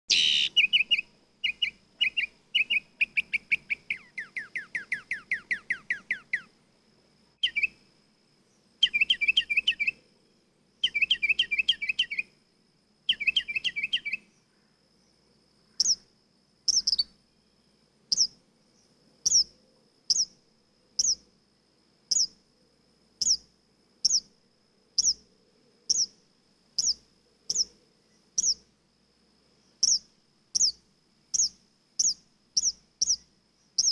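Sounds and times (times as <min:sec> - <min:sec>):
nightingale singing: 0:00.1 - 0:06.6, 0:07.4 - 0:10.1, 0:10.8 - 0:12.4, 0:13.0 - 0:21.3, 0:22.0 - 0:22.5, 0:23.2 - 0:24.4, 0:25.0 - 0:28.7, 0:29.6 - 0:33.9
faint steady high tone: 0:00.1 - 0:21.3.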